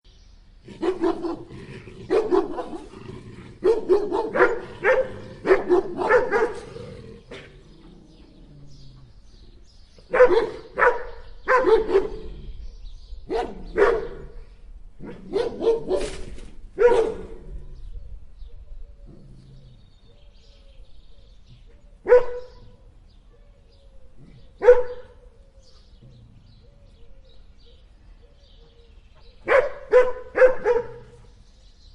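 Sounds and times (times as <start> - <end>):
dogs barking: 0.7 - 7.6, 10.0 - 12.4, 13.2 - 14.4, 15.0 - 17.6, 22.0 - 22.8, 24.2 - 25.3, 29.4 - 31.3.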